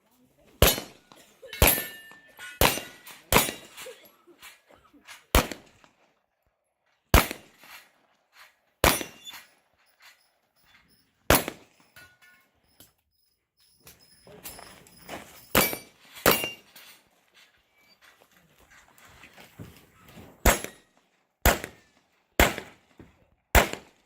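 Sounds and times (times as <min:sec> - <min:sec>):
pistol shots: 0:00.6 - 0:02.0, 0:02.6 - 0:03.7, 0:05.3 - 0:05.9, 0:07.1 - 0:07.6, 0:08.8 - 0:09.4, 0:11.3 - 0:11.7, 0:20.4 - 0:20.8, 0:21.4 - 0:21.8, 0:22.4 - 0:22.8, 0:23.6 - 0:24.0.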